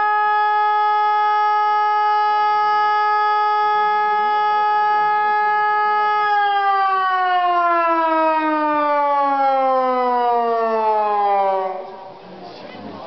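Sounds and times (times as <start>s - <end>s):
fire siren winding down: 0.0s - 12.2s.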